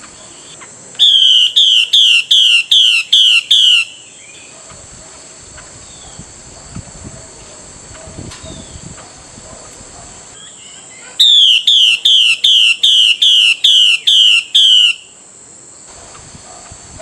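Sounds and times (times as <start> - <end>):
faint insect chirring: 0.0 - 17.0
bird whistling down-slurred notes: 1.0 - 4.0, 10.4 - 15.1.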